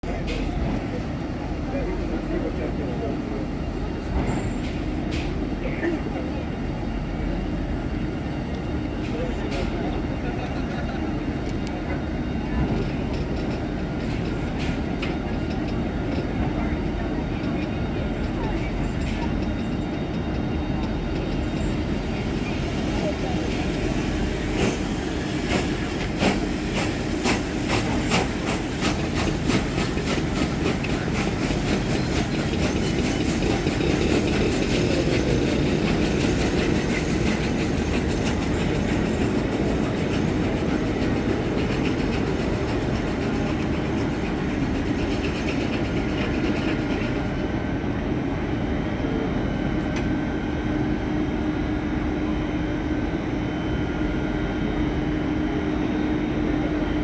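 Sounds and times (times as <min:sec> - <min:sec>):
train rumbling: 0:00.0 - 0:57.0
train wheels clicking over rail joints: 0:11.4 - 0:22.6, 0:23.6 - 0:47.4.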